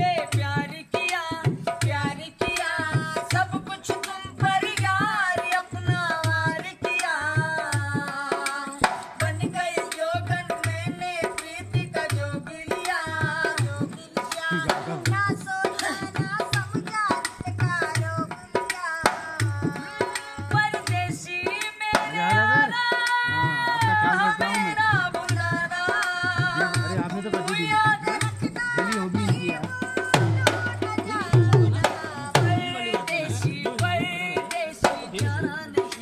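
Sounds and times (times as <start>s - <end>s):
hand drum beat: 0.0s - 36.0s.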